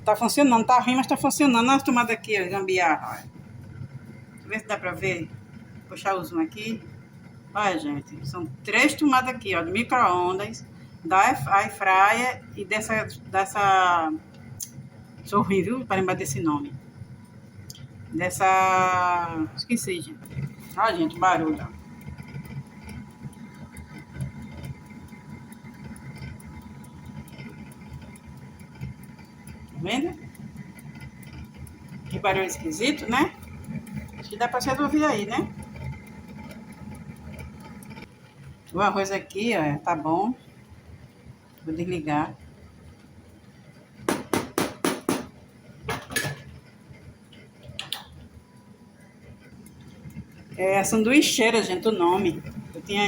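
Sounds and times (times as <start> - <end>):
air fryer rumbling: 0.0 - 53.0
faint ticking: 0.1 - 45.8, 46.6 - 53.0
pot and lid clattering: 44.1 - 46.6.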